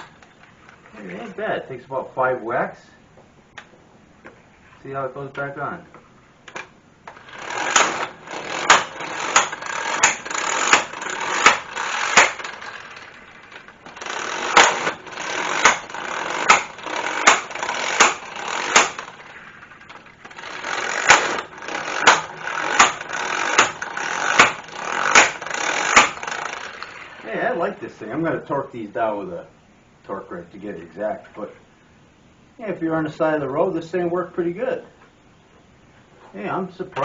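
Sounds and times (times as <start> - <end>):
impact wrench hammering: 7.1 - 19.3, 20.3 - 27.0.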